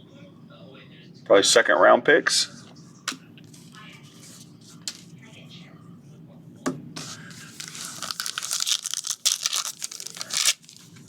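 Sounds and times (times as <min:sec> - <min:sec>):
plastic wrapper tearing and crinkling: 0:07.5 - 0:11.0.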